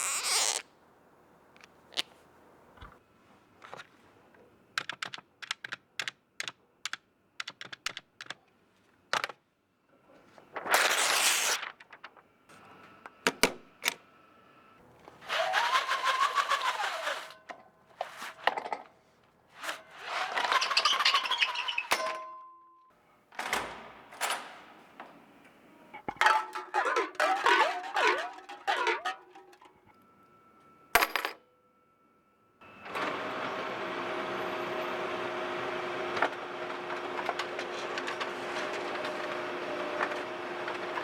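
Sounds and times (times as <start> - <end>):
keys typing clicks: 4.8 - 8.4.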